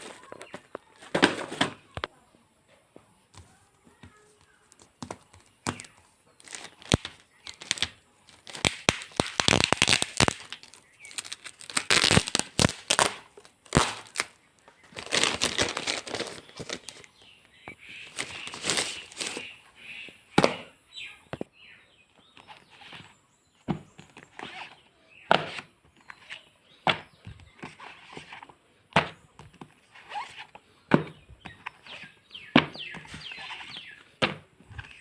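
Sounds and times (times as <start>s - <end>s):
packaging tearing and crinkling: 6.4s - 17.1s, 18.1s - 19.4s.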